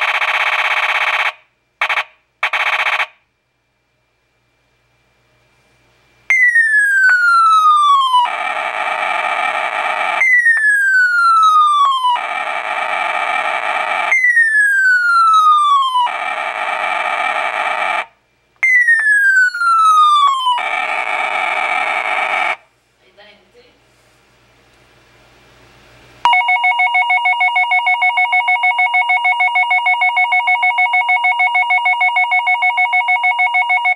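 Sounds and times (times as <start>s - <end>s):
falling electronic whistle: 6.3s - 12.3s, 14.0s - 16.2s, 18.6s - 20.6s
harsh electronic buzz: 8.1s - 10.5s, 11.8s - 14.4s, 16.0s - 18.1s, 20.5s - 22.7s.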